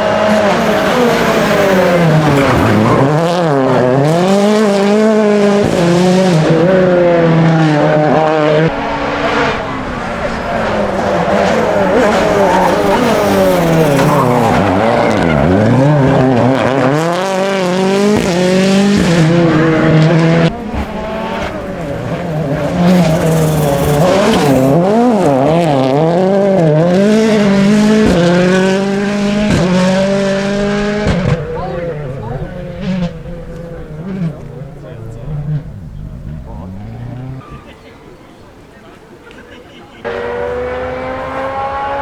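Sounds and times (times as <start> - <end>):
rally car engine revving: 0.0 - 37.8, 40.0 - 42.0.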